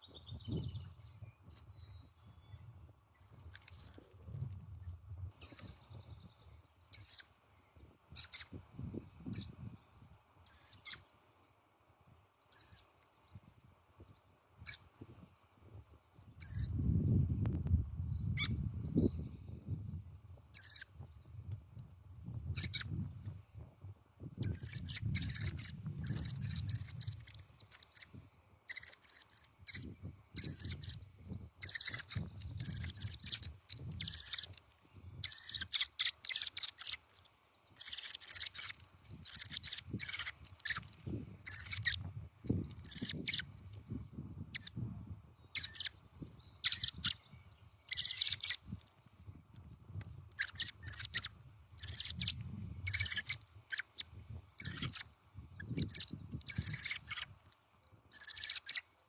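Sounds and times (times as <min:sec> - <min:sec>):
songbirds chirping: 0:00.0 - 0:19.6, 0:22.5 - 0:59.0.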